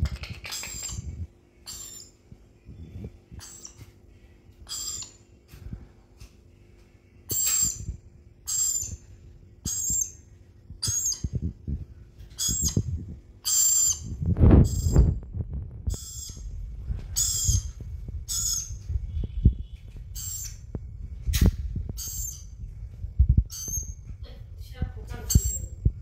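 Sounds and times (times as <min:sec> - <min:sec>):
parrot calling: 0:00.4 - 0:02.2, 0:03.4 - 0:03.9, 0:04.6 - 0:05.2, 0:07.3 - 0:11.4, 0:12.3 - 0:15.1, 0:15.9 - 0:16.5, 0:17.2 - 0:18.9, 0:20.2 - 0:20.7, 0:21.3 - 0:22.5.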